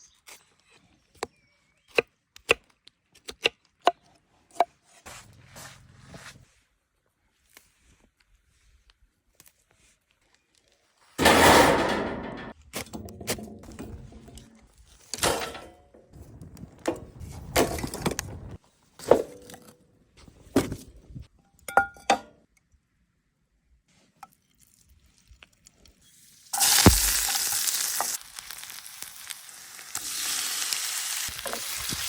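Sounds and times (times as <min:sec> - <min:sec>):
loud hiss from a pan: 0:26.4 - 0:32.0.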